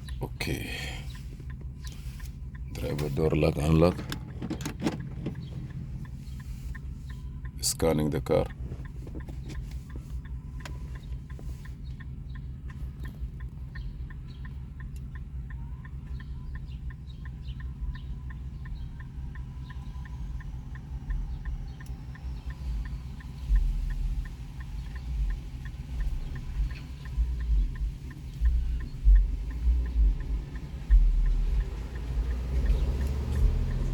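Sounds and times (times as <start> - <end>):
low steady hum: 0.0 - 33.9
hazard flasher ticking: 9.9 - 33.9
low thumps: 23.5 - 33.9.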